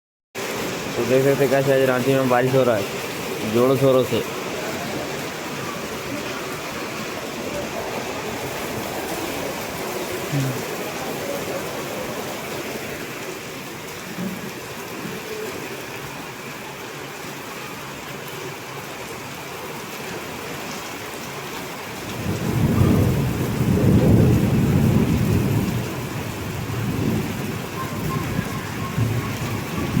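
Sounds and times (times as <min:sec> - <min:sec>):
heavy rain: 0:00.4 - 0:30.0
thunder rumbling: 0:01.1 - 0:13.1, 0:22.0 - 0:30.0.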